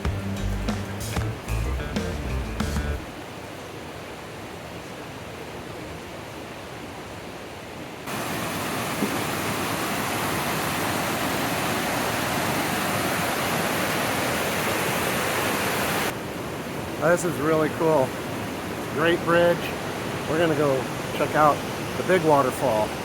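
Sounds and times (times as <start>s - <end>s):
water rushing over cascade: 3.1s - 23.0s.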